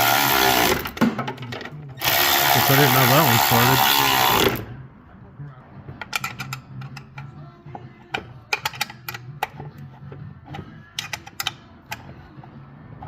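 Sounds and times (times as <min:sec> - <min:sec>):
metallic clicks of hand tools: 0:06.0 - 0:07.4, 0:08.1 - 0:09.8, 0:10.5 - 0:12.1.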